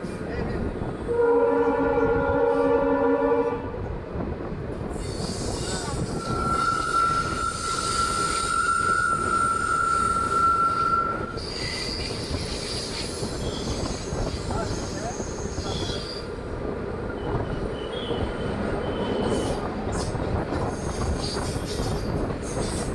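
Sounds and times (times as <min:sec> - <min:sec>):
train coaches rumbling on track: 0:00.0 - 0:22.9
train horn: 0:01.1 - 0:03.9, 0:06.2 - 0:11.4
high-pitched wheel squeal: 0:05.0 - 0:16.3.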